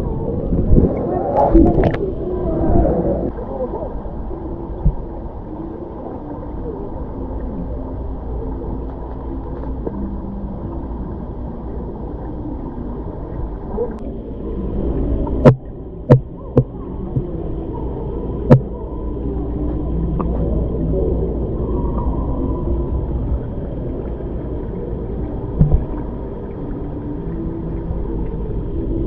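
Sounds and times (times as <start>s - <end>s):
low indoor hum and rumble: 0.0s - 29.0s
sharp knocks: 15.4s - 16.7s.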